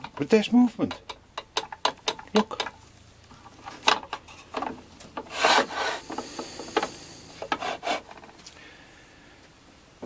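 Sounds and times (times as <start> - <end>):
rubbing and scraping strokes: 5.2 - 8.3.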